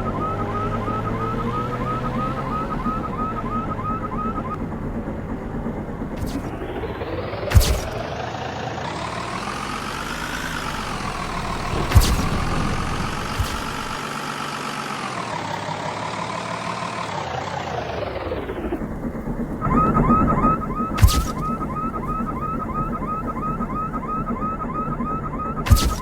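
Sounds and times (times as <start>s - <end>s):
road noise: 0.0s - 26.0s
vehicle engine whine: 0.0s - 26.0s.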